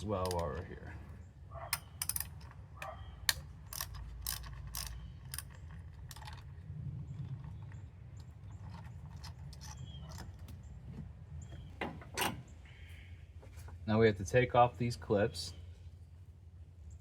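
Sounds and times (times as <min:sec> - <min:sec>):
ratchet wrench clicking: 0:01.7 - 0:02.5, 0:03.3 - 0:06.4.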